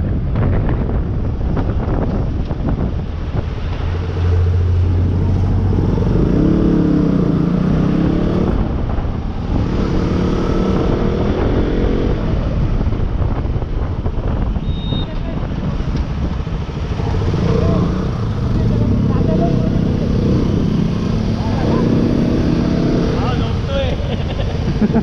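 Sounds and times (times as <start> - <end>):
motorcycle engine revving: 3.4 - 12.9, 15.4 - 24.2.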